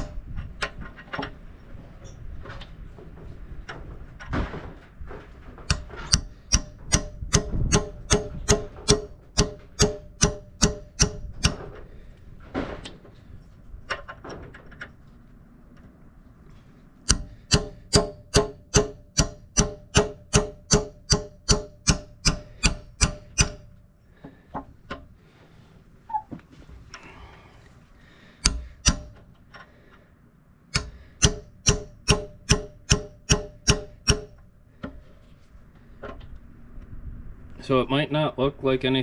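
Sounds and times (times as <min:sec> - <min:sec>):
hammer striking steel pin: 0:00.0 - 0:00.2, 0:05.7 - 0:11.7, 0:17.1 - 0:23.8, 0:28.4 - 0:29.2, 0:30.7 - 0:34.4.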